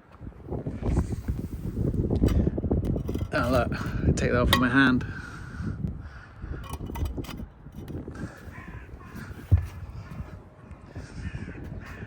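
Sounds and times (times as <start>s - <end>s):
wind rumble on microphone: 0.0s - 12.0s
crow cawing: 5.2s - 6.7s, 8.2s - 12.0s.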